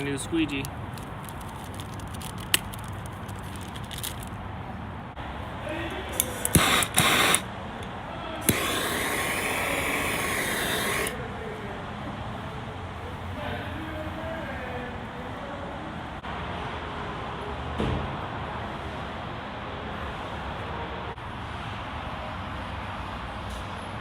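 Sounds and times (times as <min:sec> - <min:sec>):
spray bottle squirting: 0:06.1 - 0:07.5, 0:08.4 - 0:11.2.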